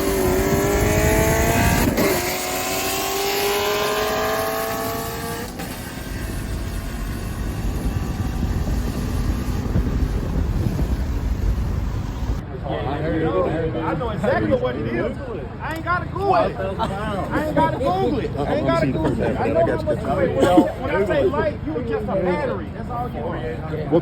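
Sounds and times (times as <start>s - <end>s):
car engine accelerating: 0.0s - 12.4s
low rumble: 5.8s - 12.4s.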